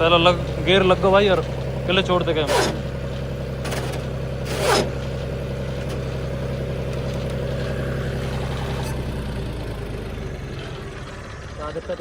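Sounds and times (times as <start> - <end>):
vehicle engine idling: 0.0 - 12.0
short scraping bursts: 2.4 - 3.0, 3.6 - 5.1.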